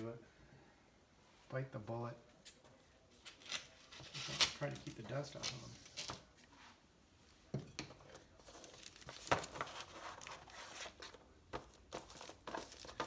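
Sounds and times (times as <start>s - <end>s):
plastic crinkling: 8.4s - 13.0s.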